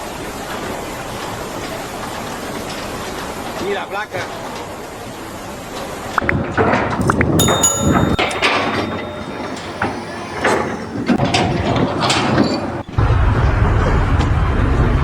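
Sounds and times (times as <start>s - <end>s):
metallic ringing: 7.4s - 10.6s.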